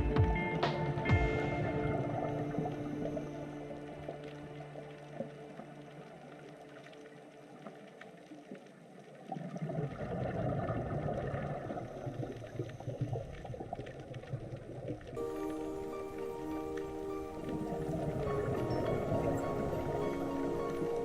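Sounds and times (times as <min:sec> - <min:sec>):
music: 0:00.0 - 0:08.4, 0:15.2 - 0:21.0.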